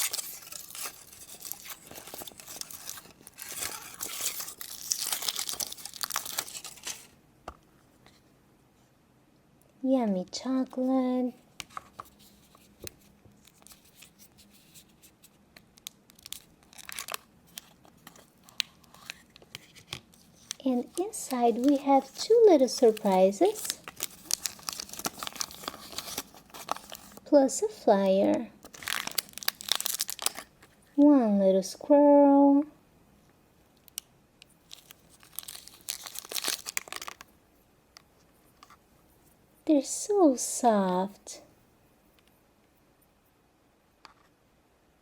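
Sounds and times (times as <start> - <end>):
wrapper tearing and crinkling: 0.0 - 7.2, 15.8 - 27.2, 28.6 - 30.7, 34.6 - 37.3.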